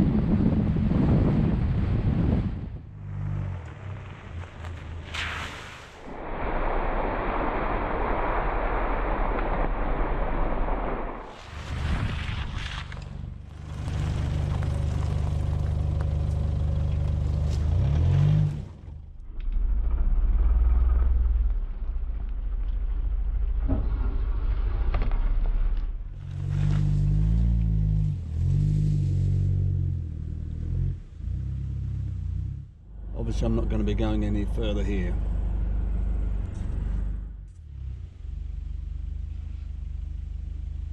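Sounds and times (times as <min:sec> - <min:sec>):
tyre and road noise: 0:00.0 - 0:40.9
car engine running: 0:13.0 - 0:19.4.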